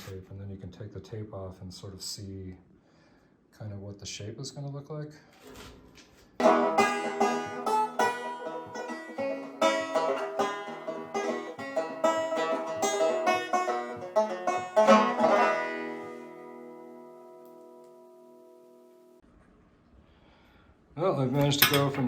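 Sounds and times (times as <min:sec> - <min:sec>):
fast picked banjo tune: 0:06.4 - 0:17.4.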